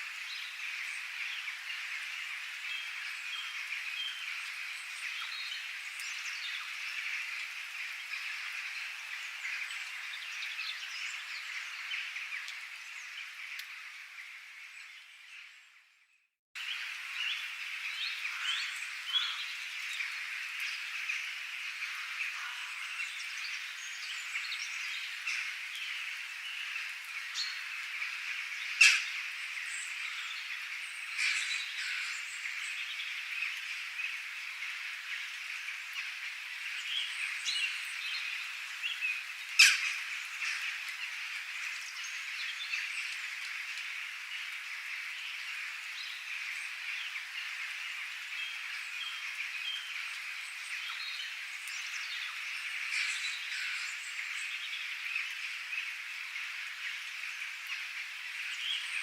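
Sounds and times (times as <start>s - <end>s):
birds chirping and calling: 17.2s - 34.2s, 36.7s - 43.3s, 48.1s - 55.4s.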